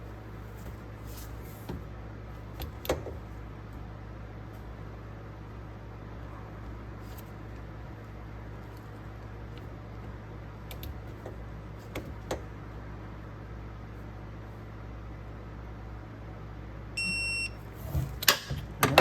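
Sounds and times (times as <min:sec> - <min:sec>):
short electronic beep: 0:17.0 - 0:17.6.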